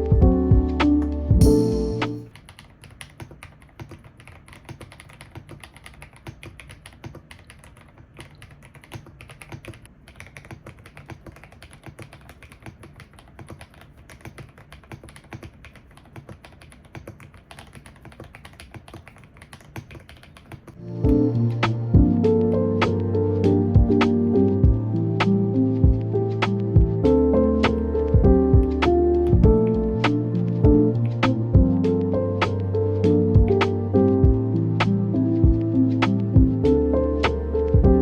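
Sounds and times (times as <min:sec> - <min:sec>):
mechanical keyboard typing: 0:02.2 - 0:21.2.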